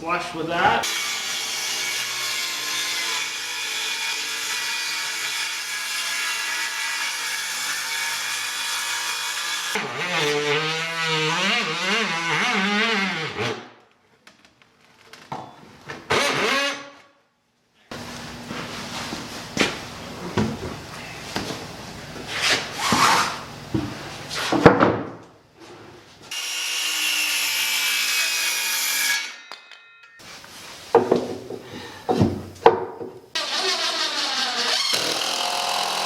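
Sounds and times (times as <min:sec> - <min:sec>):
power tool cutting wood: 0:00.8 - 0:13.7, 0:16.1 - 0:17.0, 0:26.3 - 0:29.4, 0:33.4 - 0:36.0.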